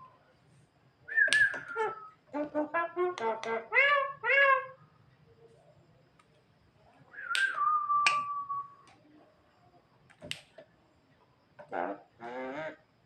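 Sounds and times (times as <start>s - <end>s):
bird whistled note: 1.1s - 2.2s
sharp clicks: 7.3s - 9.0s, 10.1s - 10.6s.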